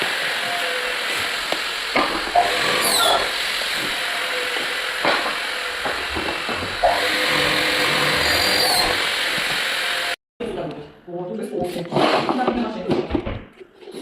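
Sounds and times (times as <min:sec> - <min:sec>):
steady hiss: 0:00.0 - 0:06.8.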